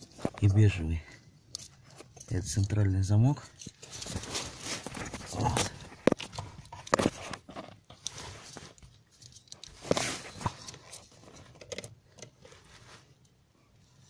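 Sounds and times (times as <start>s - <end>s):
scraping rustle: 1.6s - 11.5s, 12.4s - 13.2s.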